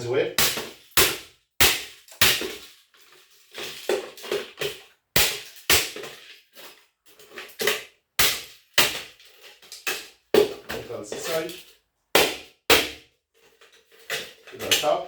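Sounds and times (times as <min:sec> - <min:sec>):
hatchet chopping into metal: 0:00.4 - 0:02.5.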